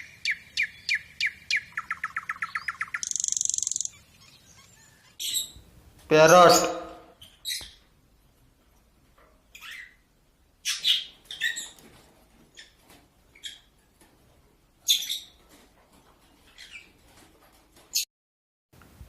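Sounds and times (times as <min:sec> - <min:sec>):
parrot squawking: 0:00.0 - 0:05.6.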